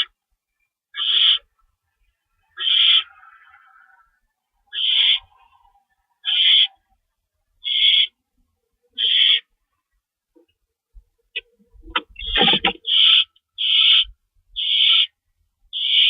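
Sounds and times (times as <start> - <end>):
barn owl screeching: 1.0 - 1.5, 2.6 - 4.1, 4.7 - 5.4, 6.2 - 6.8, 7.6 - 8.1, 9.0 - 9.5, 12.0 - 15.2, 15.8 - 16.0.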